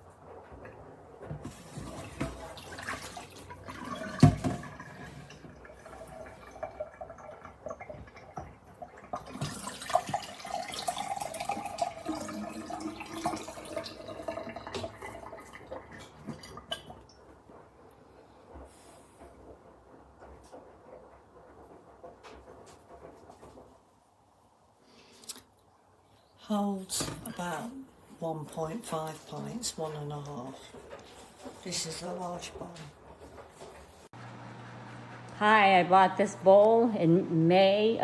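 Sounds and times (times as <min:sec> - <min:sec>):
water pouring and splashing: 0:00.6 - 0:17.2.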